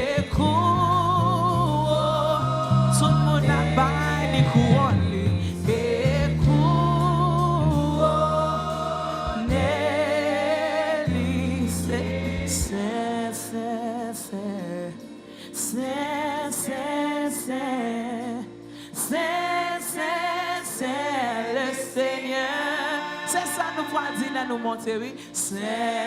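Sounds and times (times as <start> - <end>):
woman singing with vibrato: 0.0 - 8.4
singers: 0.0 - 15.0, 15.6 - 26.0
low keyboard chords: 0.0 - 22.6.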